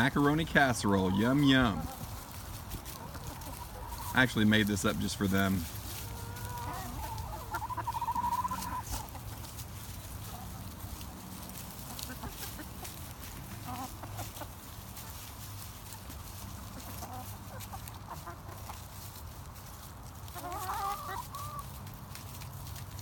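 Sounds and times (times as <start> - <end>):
chickens clucking softly: 0.0 - 23.0
loud wavering chicken call: 6.1 - 9.2.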